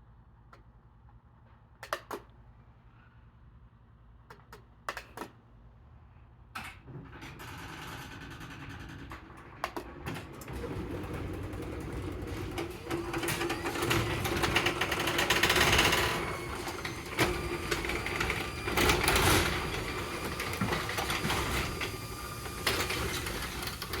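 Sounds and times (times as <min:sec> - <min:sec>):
sharp clicks: 0:01.8 - 0:02.3, 0:04.3 - 0:05.4
garage door opener motor whirr: 0:06.6 - 0:24.0.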